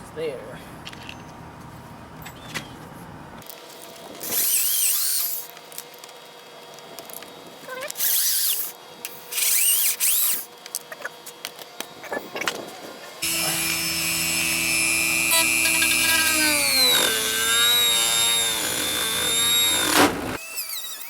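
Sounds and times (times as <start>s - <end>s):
power tool cutting plastic: 4.2s - 5.5s, 7.9s - 10.5s, 13.2s - 21.0s.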